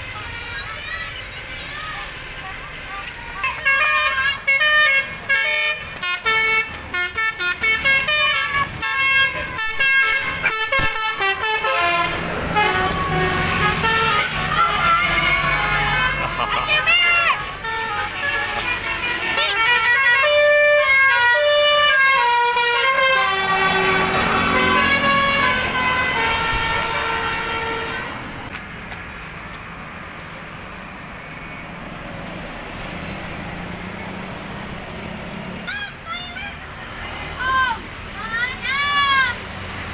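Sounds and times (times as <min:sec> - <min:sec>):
musical bus horn: 0:00.0 - 0:01.8, 0:02.9 - 0:28.5
road and engine noise: 0:00.0 - 0:39.9.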